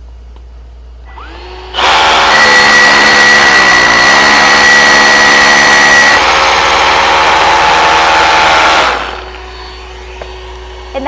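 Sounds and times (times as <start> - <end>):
dust extraction vacuum running: 1.0 - 11.0
rotary hammer drilling into concrete: 1.7 - 9.4
faint hum: 8.9 - 11.0.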